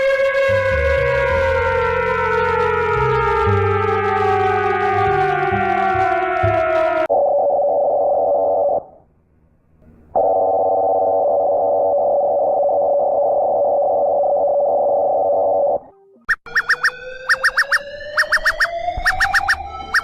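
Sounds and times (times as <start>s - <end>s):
falling tone: 16.3s - 20.0s.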